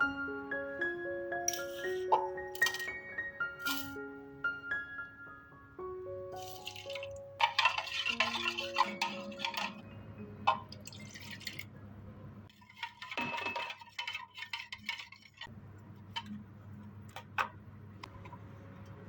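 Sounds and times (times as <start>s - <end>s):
liquid pouring into container: 6.4s - 9.7s, 10.5s - 11.7s.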